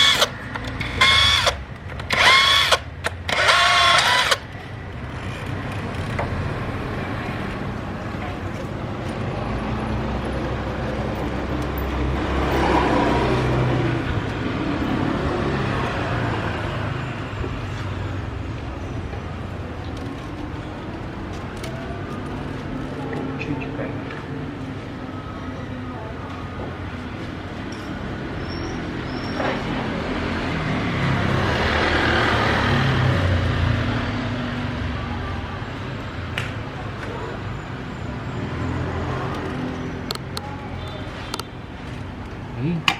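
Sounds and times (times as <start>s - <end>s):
vehicle passing by: 5.0s - 25.4s, 26.9s - 35.3s.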